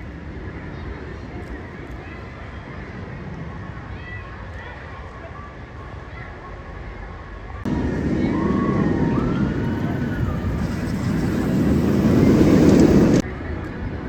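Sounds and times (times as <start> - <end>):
roller coaster wheels on track: 7.7 - 13.9.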